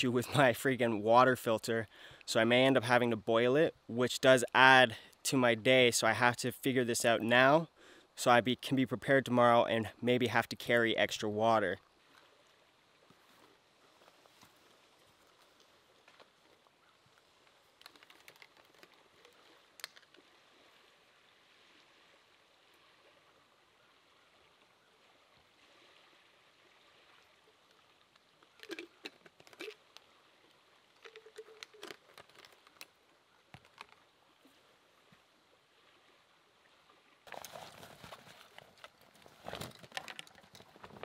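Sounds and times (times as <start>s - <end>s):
faint outdoor hiss: 0.0s - 41.0s.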